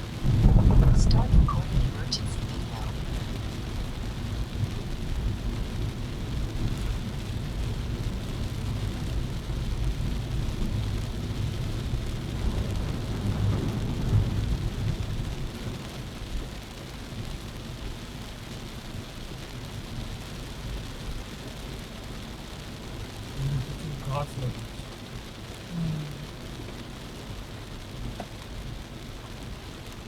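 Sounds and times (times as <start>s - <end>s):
tyres rumbling on road: 0.0s - 15.8s
heavy rain on a car: 0.0s - 30.0s.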